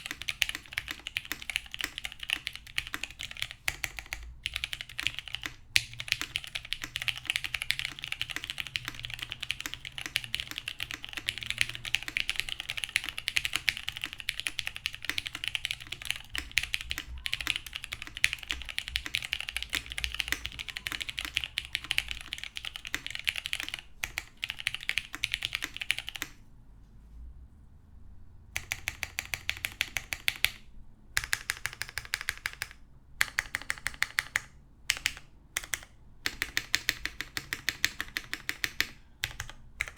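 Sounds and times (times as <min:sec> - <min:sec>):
mechanical keyboard typing: 0:00.0 - 0:26.4, 0:28.6 - 0:39.9.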